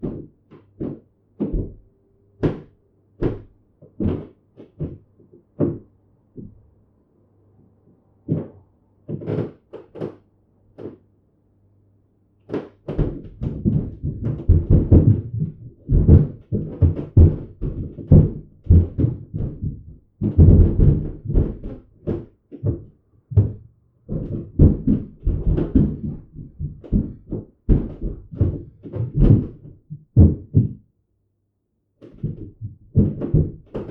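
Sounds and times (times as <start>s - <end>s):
heavy footsteps on a floor: 0.0s - 5.0s, 12.5s - 30.8s, 32.1s - 33.9s.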